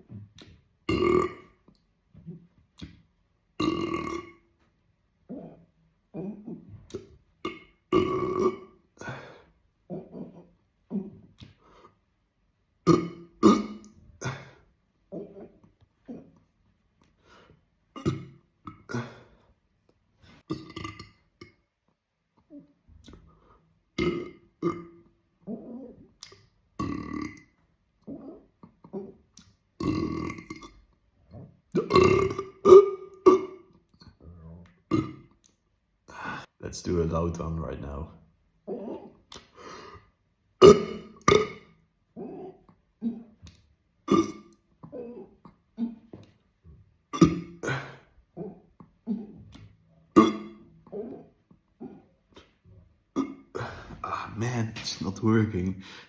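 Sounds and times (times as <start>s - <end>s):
man burping: 0.9s - 2.4s, 3.6s - 4.4s, 5.2s - 11.4s, 12.8s - 16.4s, 18.0s - 19.4s, 20.5s - 21.6s, 24.0s - 26.1s, 26.8s - 29.2s, 29.8s - 30.8s, 31.7s - 34.2s, 34.9s - 35.3s, 40.6s - 43.4s, 44.1s - 46.1s, 47.1s - 52.5s, 53.1s - 54.8s.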